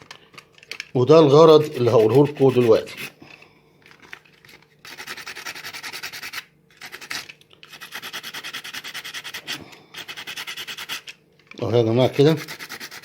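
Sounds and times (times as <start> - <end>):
sandpaper rasping on plastic: 1.6 - 3.2, 4.8 - 11.2, 12.0 - 13.0.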